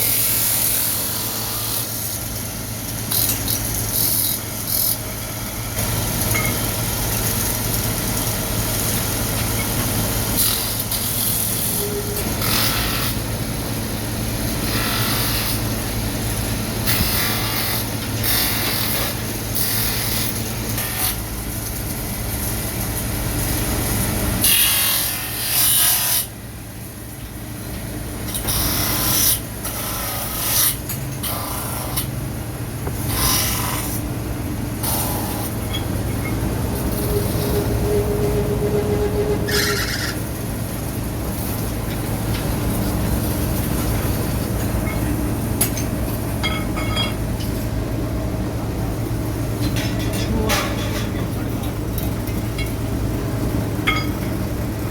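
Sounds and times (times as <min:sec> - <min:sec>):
machinery humming: 0:00.0 - 0:20.2, 0:31.2 - 0:46.5.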